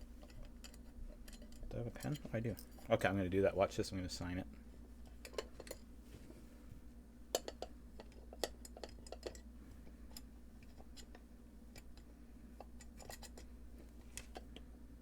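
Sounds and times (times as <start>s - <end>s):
low electrical hum: 0.0s - 15.0s
light clicks and taps on metal: 7.3s - 9.5s.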